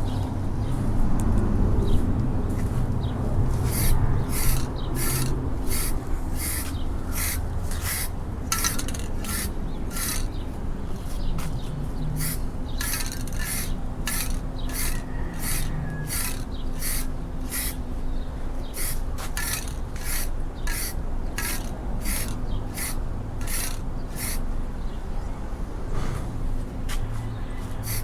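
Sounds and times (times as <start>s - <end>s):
paint brush rasping strokes: 3.5s - 17.8s, 18.7s - 24.4s, 27.8s - 28.0s.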